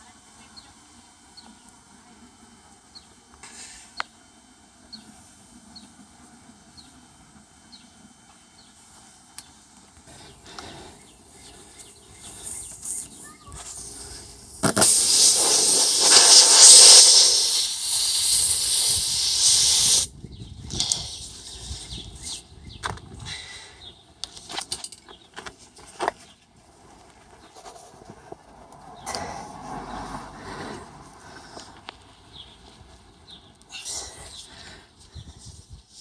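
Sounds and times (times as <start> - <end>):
air hissing from tire: 10.1 - 20.2, 20.8 - 22.5.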